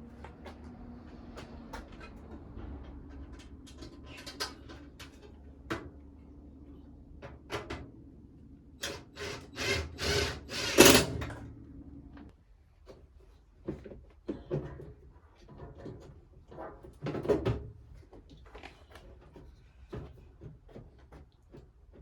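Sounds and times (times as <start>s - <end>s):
clicks and knocks of parts: 1.4s - 6.0s.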